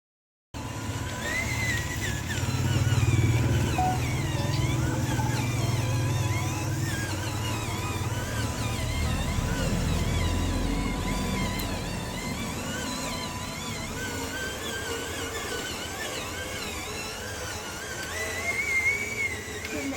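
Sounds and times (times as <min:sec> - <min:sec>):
toy motor droning: 0:00.6 - 0:19.9
high warbling chirps: 0:02.7 - 0:15.5.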